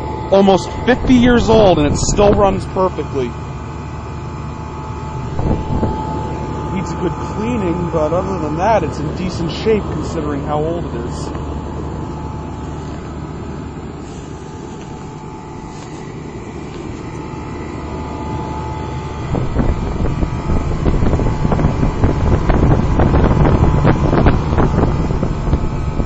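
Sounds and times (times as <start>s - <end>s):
air conditioner unit humming: 0.0s - 26.0s
wind buffeting microphone: 0.2s - 10.3s, 19.0s - 26.0s.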